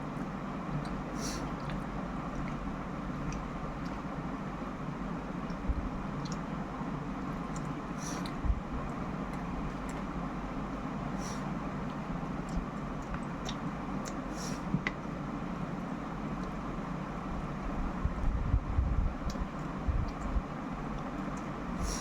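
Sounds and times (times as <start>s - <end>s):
background hum: 0.0s - 22.0s
chewing clicks and smacks: 0.1s - 10.8s, 11.6s - 15.1s, 15.8s - 16.7s, 19.2s - 21.6s.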